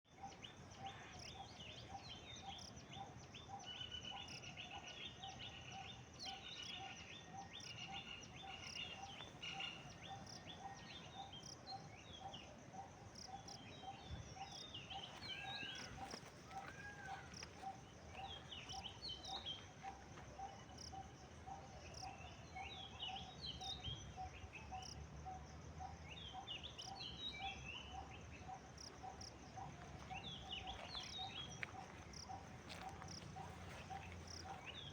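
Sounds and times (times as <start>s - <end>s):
other bird calls: 13.4s - 19.7s.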